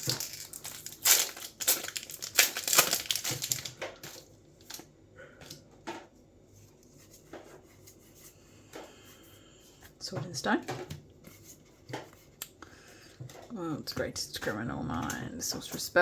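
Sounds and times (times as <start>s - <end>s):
wrapper crinkling and tearing: 0.0s - 4.9s.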